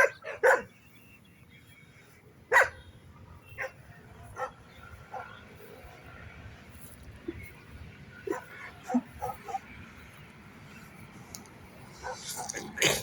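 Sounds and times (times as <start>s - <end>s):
dogs barking: 0.0s - 0.8s, 2.5s - 5.5s, 8.1s - 9.8s, 11.9s - 13.0s.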